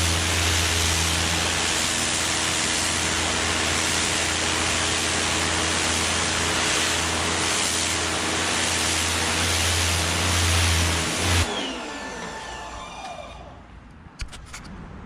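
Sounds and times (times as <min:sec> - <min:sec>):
pressure washer spraying water: 0:00.0 - 0:11.6
motor winding down whine: 0:00.0 - 0:13.7.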